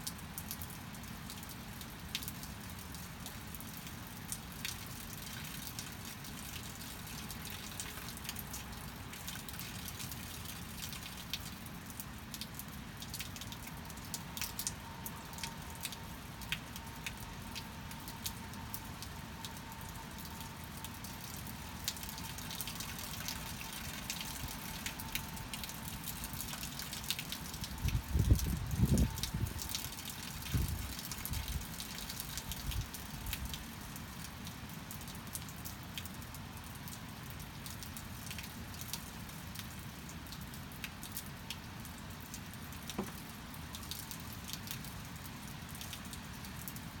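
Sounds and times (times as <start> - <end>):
rain pattering: 0.0 - 47.0
drips tapping on surfaces: 42.9 - 43.2.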